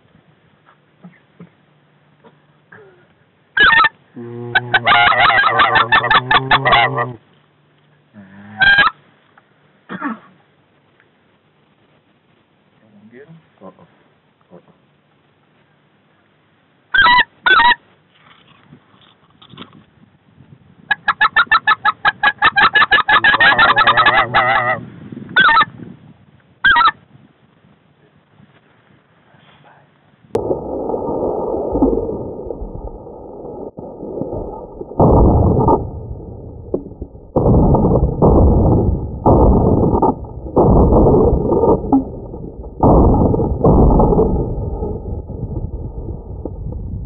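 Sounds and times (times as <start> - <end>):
waterfowl honking calls: 3.6 - 4.0, 4.6 - 7.2, 8.6 - 9.0, 17.0 - 17.8, 21.0 - 24.8.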